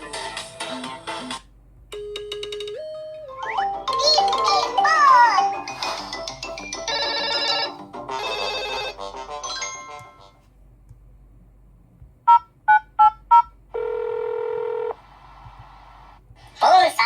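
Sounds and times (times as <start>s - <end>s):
smartphone ringtone melody: 2.0s - 9.0s.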